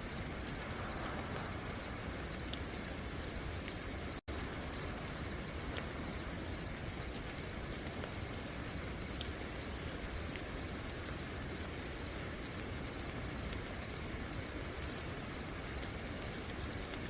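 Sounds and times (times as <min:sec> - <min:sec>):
crickets trilling: 0:00.0 - 0:17.0
steady rain: 0:00.0 - 0:17.0
faint ticks: 0:00.5 - 0:03.8, 0:12.0 - 0:17.0.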